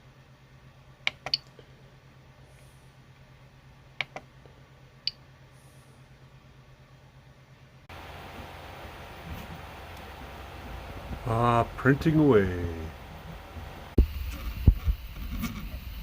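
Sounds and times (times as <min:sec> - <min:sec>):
faint printer hum: 0:00.0 - 0:16.0.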